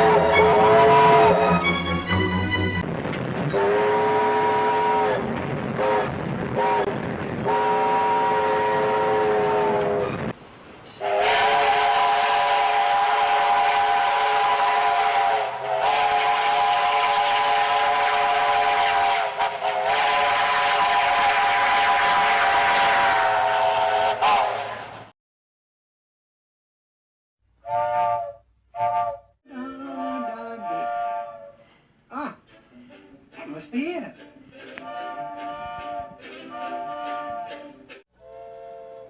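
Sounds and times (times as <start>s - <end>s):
steam train whistle blasts: 0.0s - 1.8s, 3.5s - 10.2s, 11.0s - 25.0s, 27.6s - 31.8s, 34.8s - 39.0s
steam hissing: 11.0s - 25.0s.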